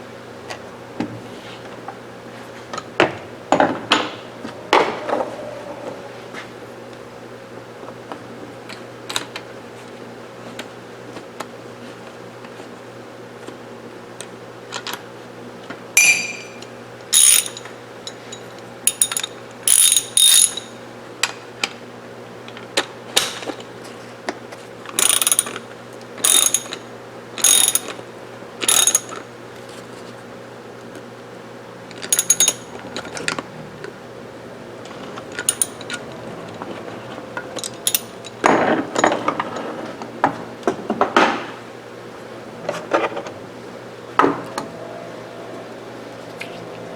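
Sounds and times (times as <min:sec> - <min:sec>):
low steady hum: 0:16.0 - 0:16.8
metallic clicking and ratcheting: 0:17.2 - 0:17.7, 0:26.3 - 0:26.8, 0:32.1 - 0:32.7, 0:35.4 - 0:36.0, 0:37.6 - 0:38.4.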